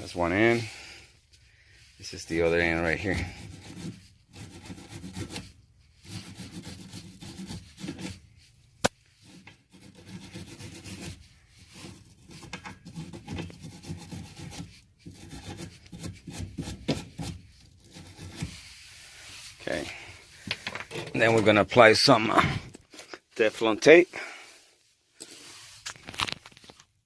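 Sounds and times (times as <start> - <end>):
wire brush scrubbing threads: 2.0 - 8.2.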